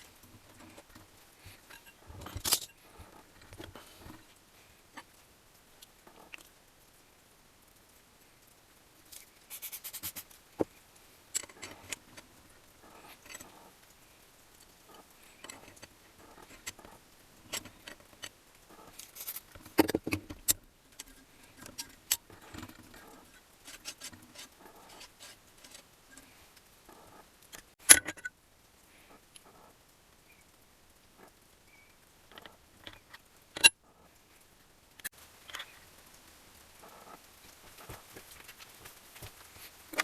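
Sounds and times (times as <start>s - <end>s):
metal tools clinking and rattling: 0.6s - 4.1s.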